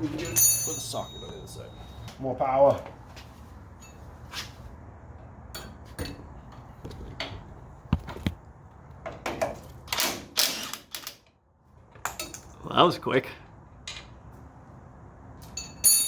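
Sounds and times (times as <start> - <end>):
wrench clinking against metal: 0.2 - 2.1, 15.4 - 16.0.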